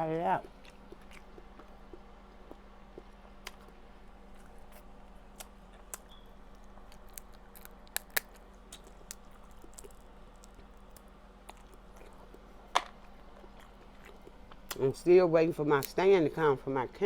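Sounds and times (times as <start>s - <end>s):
faint steady hum: 0.0s - 17.0s
crab shells cracking: 4.7s - 14.8s.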